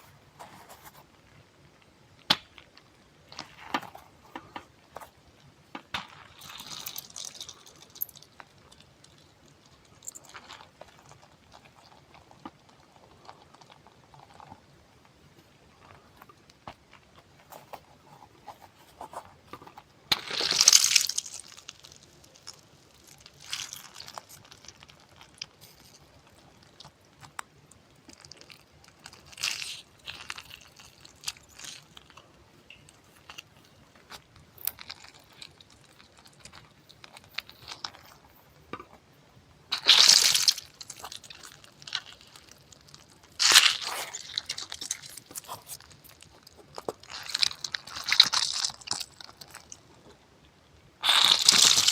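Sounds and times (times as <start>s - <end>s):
small clicks and crackles: 0.0s - 50.2s
close-miked crunching: 15.4s - 50.1s, 51.0s - 51.9s.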